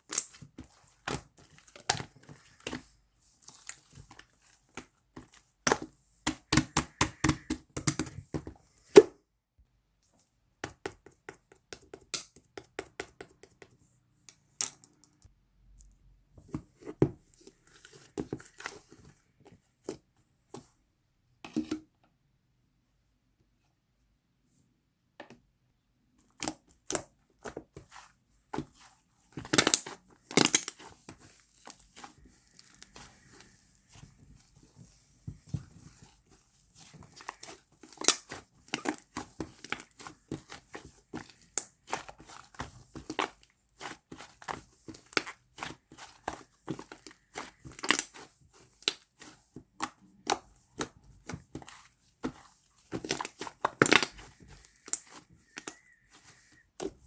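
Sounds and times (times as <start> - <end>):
slime squished by hand: 35.7 - 57.0.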